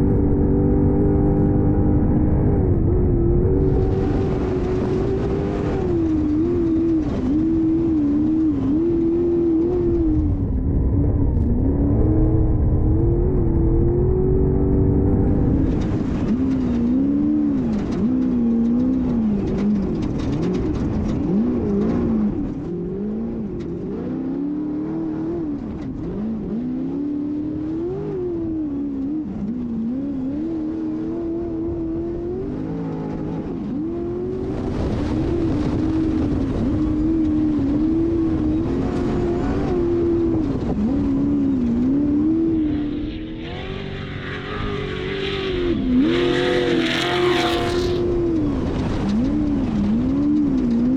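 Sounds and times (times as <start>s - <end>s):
engine revving: 0.0s - 50.9s.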